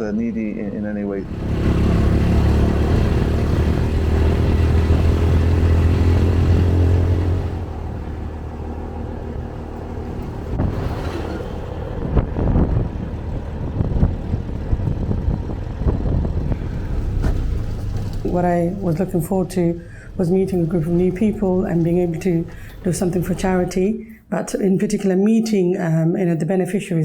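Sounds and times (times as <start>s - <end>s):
road noise: 0.0s - 24.7s
small engine running: 1.2s - 10.6s.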